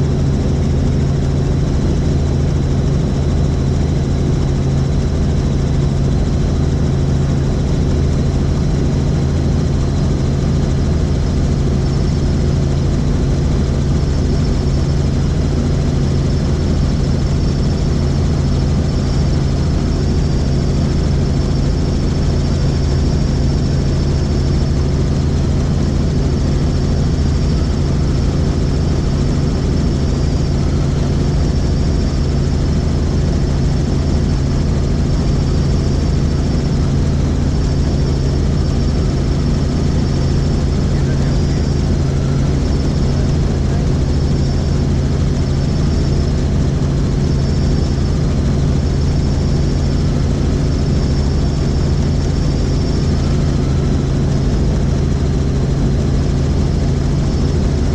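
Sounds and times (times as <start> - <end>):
helicopter rotor drone: 0.0 - 57.9
high whine: 0.0 - 57.9.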